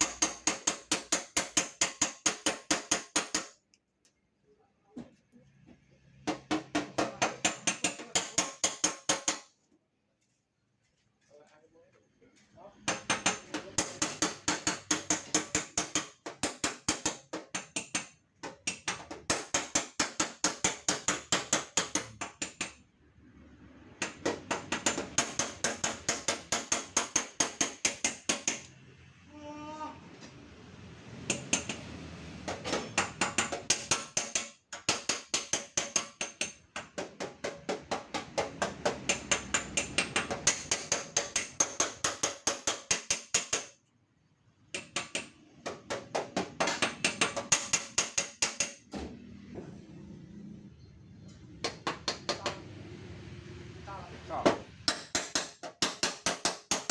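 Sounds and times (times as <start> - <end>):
hammer tapping on sheet metal: 0.0 - 3.6, 6.3 - 9.6, 12.9 - 22.8, 24.0 - 28.7, 31.3 - 43.8, 44.8 - 48.9, 51.6 - 52.6, 54.5 - 56.9.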